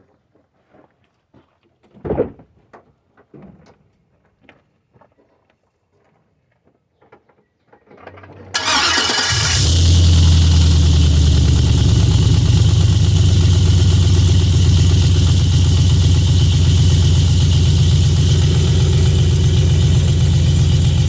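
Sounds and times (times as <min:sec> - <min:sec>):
car engine starting and idling: 0:08.6 - 0:21.0.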